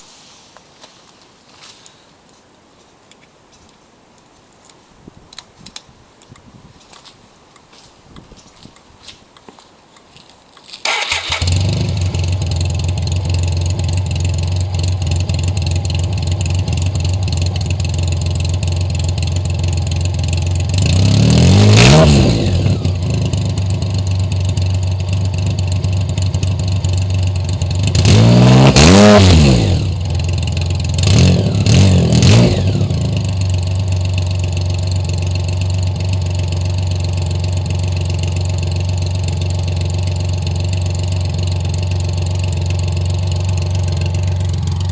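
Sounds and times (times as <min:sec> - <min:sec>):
motorcycle engine revving and idling: 0:10.8 - 0:44.9.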